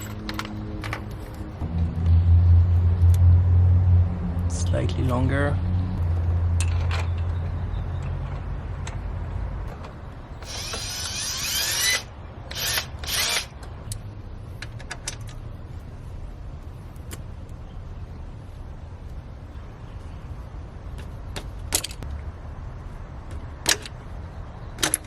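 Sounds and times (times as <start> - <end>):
low hum: 0.0 - 4.5
power drill running: 10.4 - 13.5.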